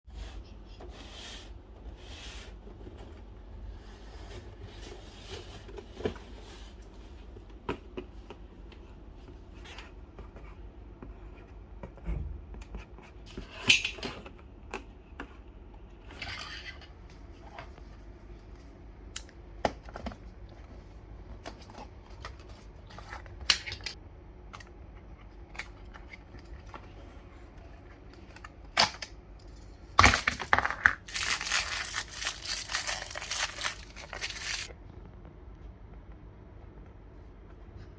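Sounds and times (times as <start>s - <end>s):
plastic crinkling: 30.0s - 34.7s.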